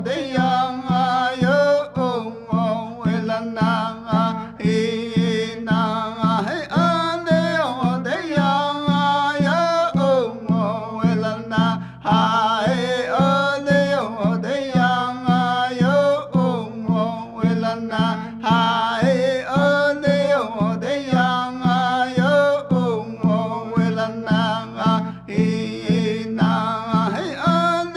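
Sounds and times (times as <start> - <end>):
person singing: 0.0 - 27.9
steady low beat: 3.2 - 7.9, 10.2 - 14.2, 22.8 - 27.9.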